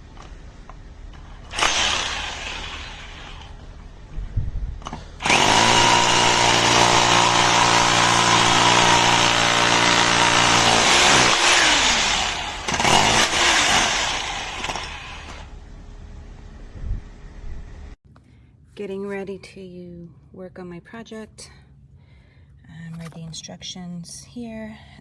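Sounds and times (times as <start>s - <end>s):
rotary hammer drill motor running: 1.3s - 3.6s, 5.2s - 15.5s.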